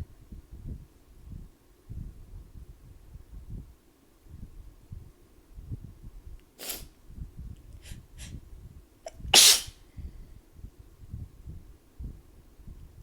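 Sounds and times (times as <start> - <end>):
person sneezing: 9.1 - 9.8.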